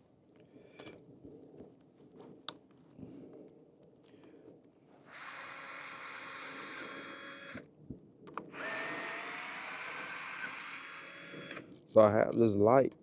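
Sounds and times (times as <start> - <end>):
cordless power drill running: 5.1 - 7.7, 8.5 - 11.6.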